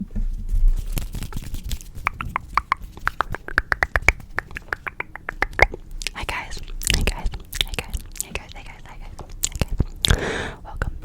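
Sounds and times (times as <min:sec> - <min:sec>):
rapid tapping on hard object: 0:02.0 - 0:05.8.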